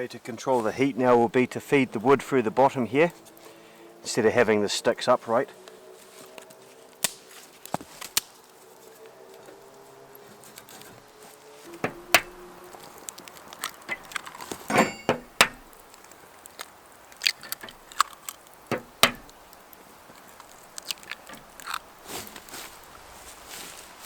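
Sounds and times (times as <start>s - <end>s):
small sticks snapping and knocking: 3.1s - 3.5s, 5.6s - 23.6s.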